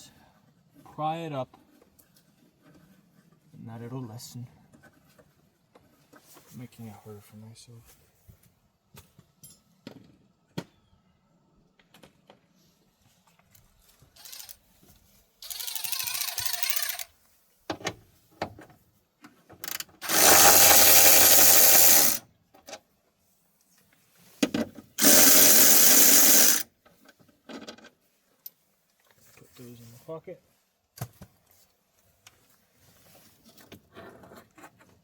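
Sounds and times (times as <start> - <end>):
cordless power tool running: 20.0 - 22.2, 25.0 - 26.6.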